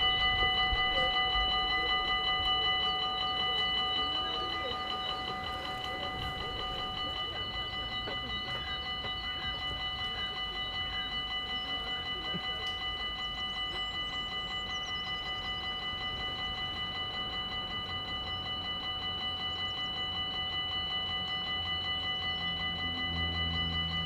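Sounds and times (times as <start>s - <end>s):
level crossing warning bells: 0.0s - 24.0s.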